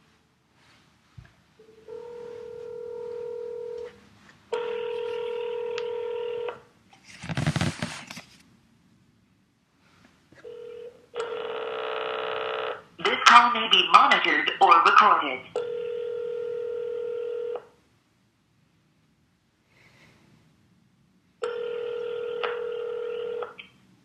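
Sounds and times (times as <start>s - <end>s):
telephone ringing tone: 1.6s - 6.6s, 10.4s - 12.8s, 15.5s - 17.7s, 21.4s - 23.6s.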